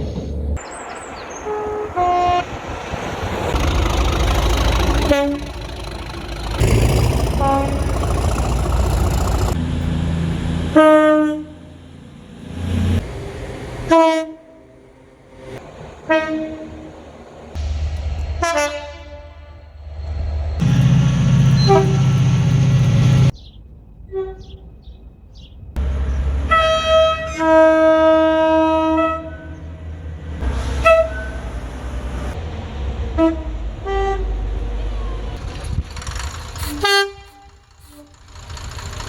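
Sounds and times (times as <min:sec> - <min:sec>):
train rumble: 0:00.0 - 0:39.0
train horn blasts: 0:01.4 - 0:02.6, 0:05.0 - 0:05.6, 0:07.2 - 0:08.2, 0:10.7 - 0:11.8, 0:13.9 - 0:14.7, 0:16.0 - 0:16.9, 0:18.4 - 0:19.8, 0:21.5 - 0:23.2, 0:26.4 - 0:29.8, 0:30.7 - 0:31.6, 0:33.2 - 0:34.5, 0:36.6 - 0:38.3.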